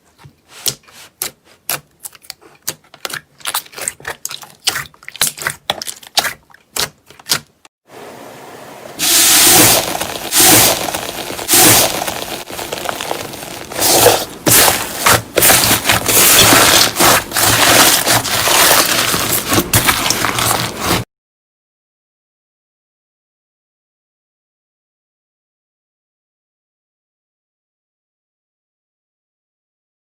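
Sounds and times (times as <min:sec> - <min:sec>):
slime crackling and squishing: 0:01.2 - 0:07.6, 0:09.0 - 0:21.0.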